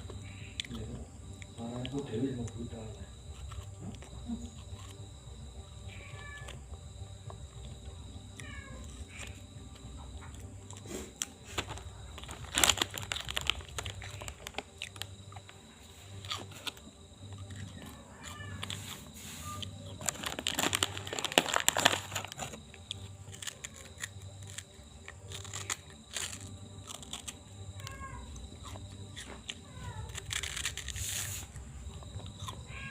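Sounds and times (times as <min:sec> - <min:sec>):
rustling and crackling: 0:10.2 - 0:28.1.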